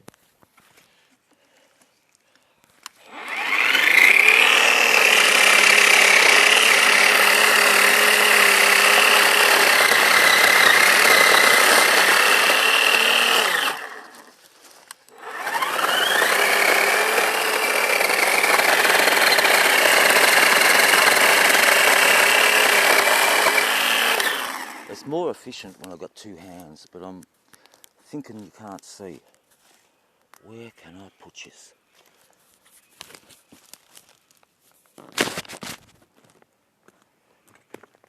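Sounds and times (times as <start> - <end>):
battery chainsaw cutting wood: 2.9 - 14.4, 15.1 - 25.2.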